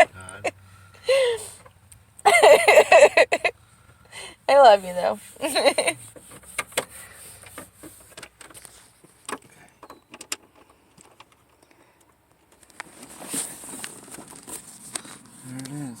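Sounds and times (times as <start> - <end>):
light clicks and rattles of parts: 5.8 - 15.9.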